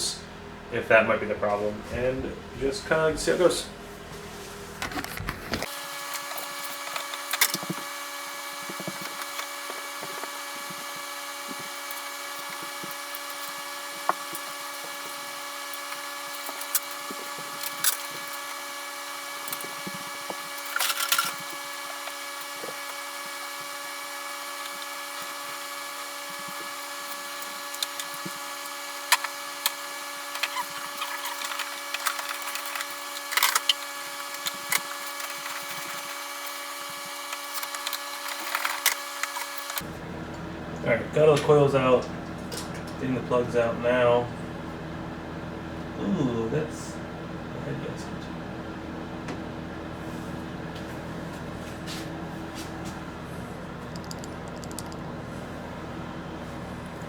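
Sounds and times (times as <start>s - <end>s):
steady tonal hum: 0.0s - 57.0s
hand tools and plastic parts clicking: 19.4s - 23.0s, 26.2s - 39.8s, 53.8s - 55.0s.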